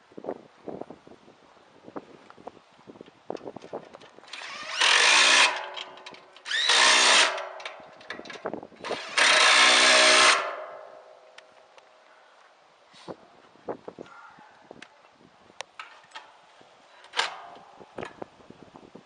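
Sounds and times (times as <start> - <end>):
power drill running: 4.3 - 7.6, 8.8 - 10.6.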